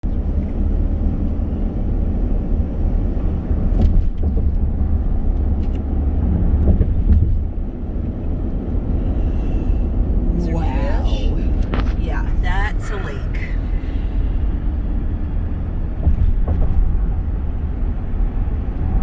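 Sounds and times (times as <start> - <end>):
car engine and tyre rumble: 0.0 - 19.0.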